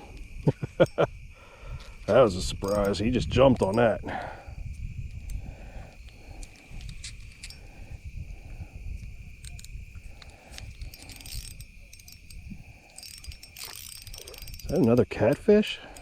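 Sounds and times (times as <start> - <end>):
insects trilling: 0.0 - 16.0
faint clicks: 8.4 - 16.0.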